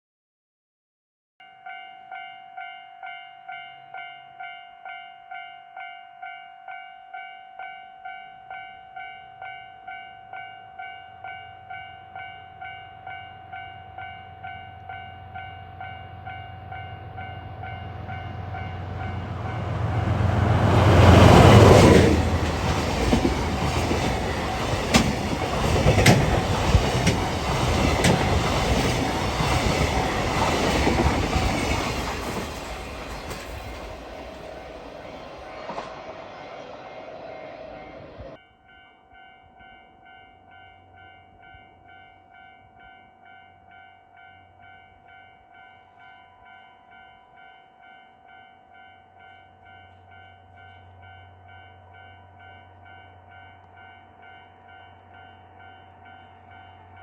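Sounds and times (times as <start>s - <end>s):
level crossing warning bell ringing: 1.4s - 35.0s
train rumble: 14.0s - 38.4s
wheels clattering over rail joints: 19.9s - 37.7s.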